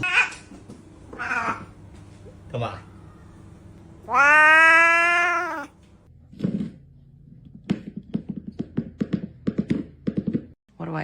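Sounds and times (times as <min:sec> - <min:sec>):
cat meowing: 0:01.2 - 0:01.7, 0:04.0 - 0:05.8.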